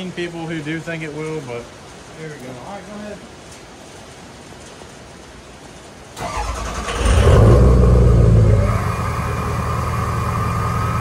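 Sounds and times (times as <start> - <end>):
diesel engine starting and idling: 6.2 - 11.0.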